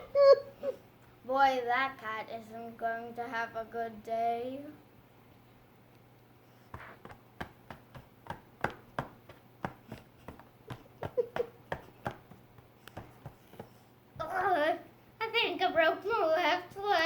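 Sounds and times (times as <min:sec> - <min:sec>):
hard objects knocking on a tabletop: 0:06.8 - 0:12.4.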